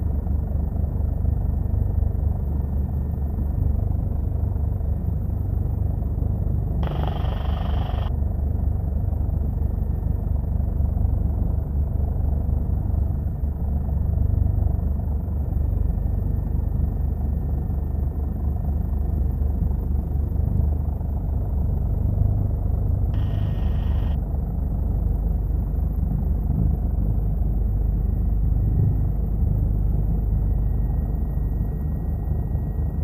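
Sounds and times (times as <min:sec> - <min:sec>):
helicopter rotor and engine drone: 0:00.0 - 0:33.0.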